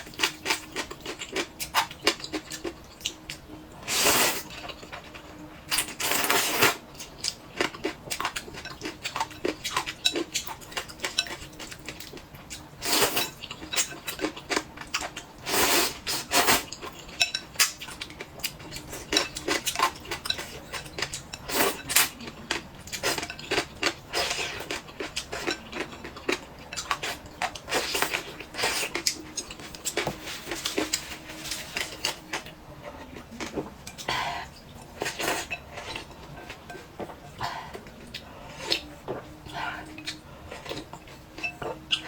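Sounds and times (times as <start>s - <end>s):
dishes and cutlery clinking: 16.7s - 34.1s, 35.0s - 42.0s.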